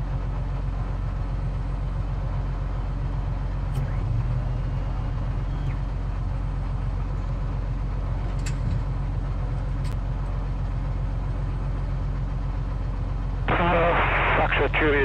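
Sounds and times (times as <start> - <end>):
airplane engine and propeller droning: 0.0 - 15.0.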